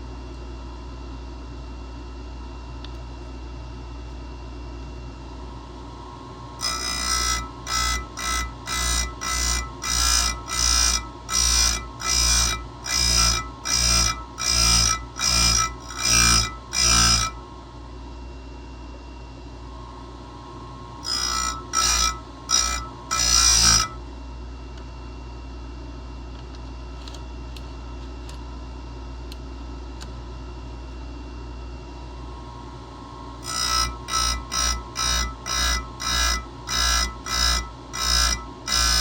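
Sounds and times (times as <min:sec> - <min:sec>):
grinder humming: 0:05.8 - 0:17.6, 0:19.7 - 0:24.0, 0:32.3 - 0:39.0
grinder grinding chain with ringing: 0:06.6 - 0:17.4, 0:21.0 - 0:24.0, 0:33.4 - 0:39.0.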